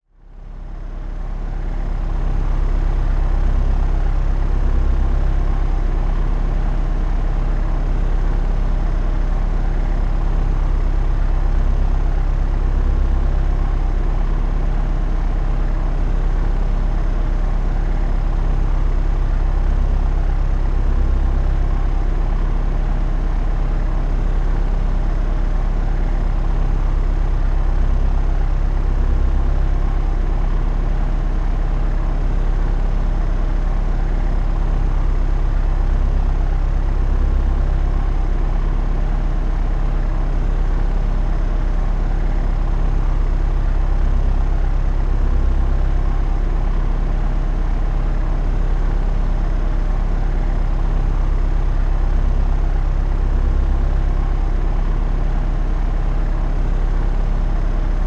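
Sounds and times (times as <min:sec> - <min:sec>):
propeller aeroplane engine droning: 0:00.2 - 0:58.0.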